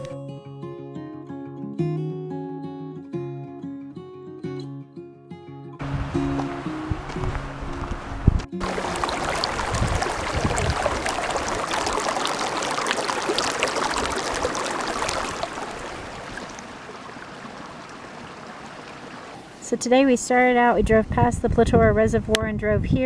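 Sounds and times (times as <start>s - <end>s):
river water rushing: 5.8s - 19.6s.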